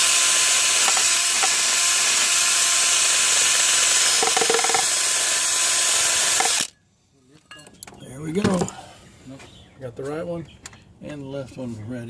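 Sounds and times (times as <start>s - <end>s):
rotary power tool scouring: 0.0s - 6.7s.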